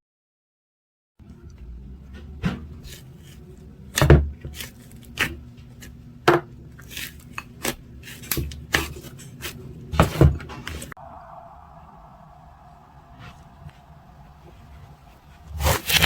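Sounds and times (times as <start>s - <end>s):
faint low hum: 10.9s - 16.0s.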